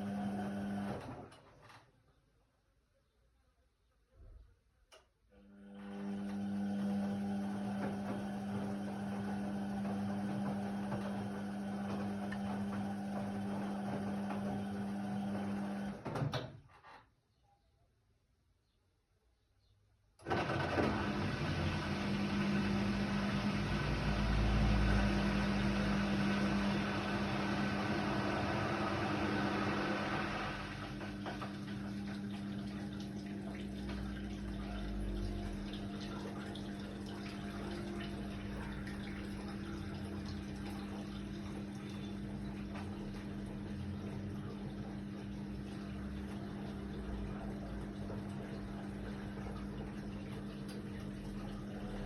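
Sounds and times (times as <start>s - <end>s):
washing machine water rushing: 0.0s - 1.4s, 5.4s - 16.3s, 20.2s - 52.0s
washing machine hum: 0.0s - 2.0s, 4.2s - 16.7s, 20.2s - 52.0s.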